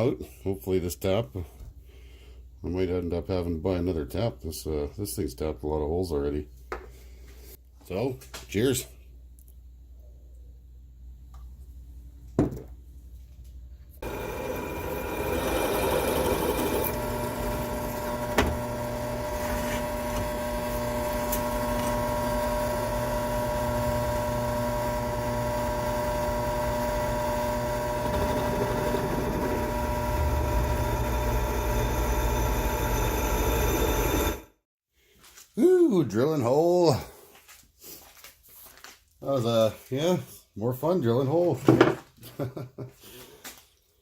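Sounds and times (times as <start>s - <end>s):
metal lathe drilling metal: 14.0s - 34.5s.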